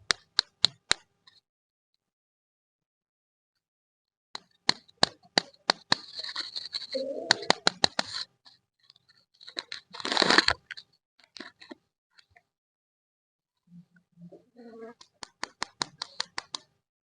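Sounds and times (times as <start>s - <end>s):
plastic wrapper crinkling: 9.5s - 10.8s
wrapper tearing: 9.6s - 10.8s.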